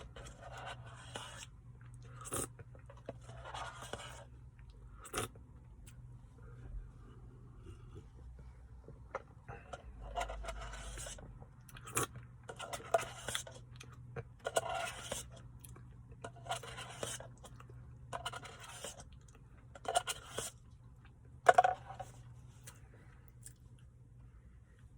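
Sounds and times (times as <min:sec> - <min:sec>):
spoon scraping ice cream: 0:00.0 - 0:04.4, 0:09.7 - 0:19.2, 0:19.8 - 0:20.7.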